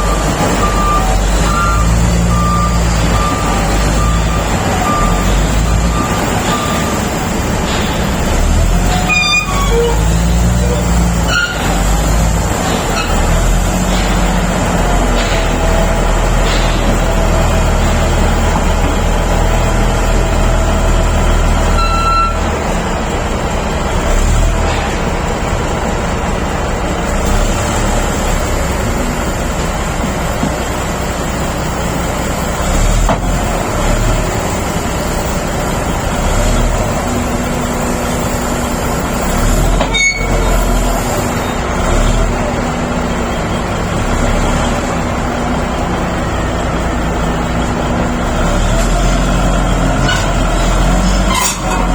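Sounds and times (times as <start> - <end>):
high squeals: 0.0 - 11.9, 39.8 - 41.6
bulldozer diesel engine running: 0.0 - 51.9.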